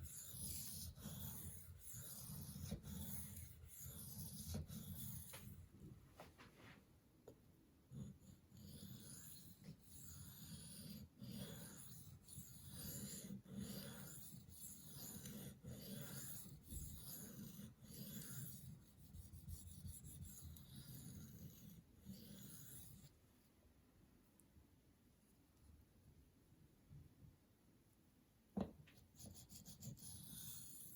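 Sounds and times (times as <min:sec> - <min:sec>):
knife rasping on sharpening stone: 0:00.0 - 0:05.5, 0:07.9 - 0:23.1, 0:29.2 - 0:30.9.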